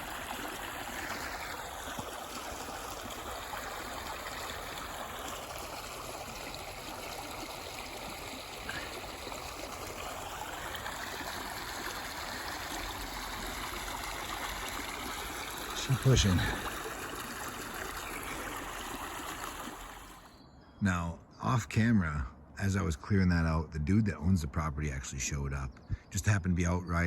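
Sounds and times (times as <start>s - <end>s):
rush of running water: 0.0s - 20.3s.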